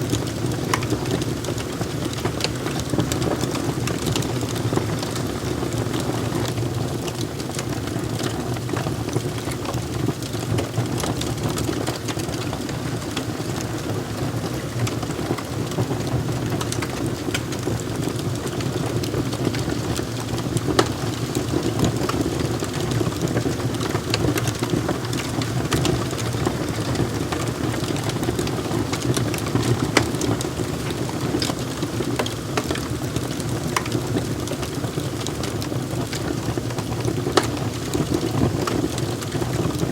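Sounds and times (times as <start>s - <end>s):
fire popping and snapping: 0.0s - 39.9s
wood fire crackling: 0.0s - 39.9s.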